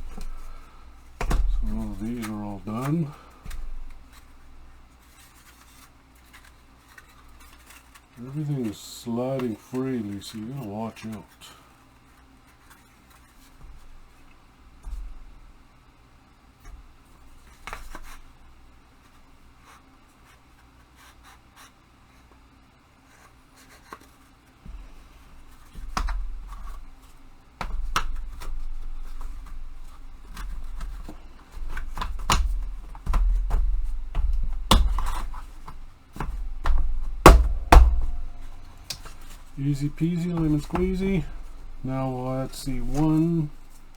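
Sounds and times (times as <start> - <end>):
low bumps on bench: 0.0 - 5.0, 24.7 - 43.9
sharp knocks: 31.5 - 42.0.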